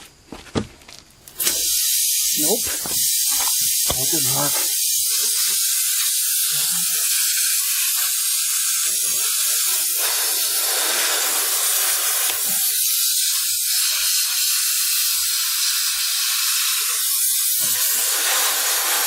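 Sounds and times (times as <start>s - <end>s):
air hissing from tyre: 1.2s - 19.0s.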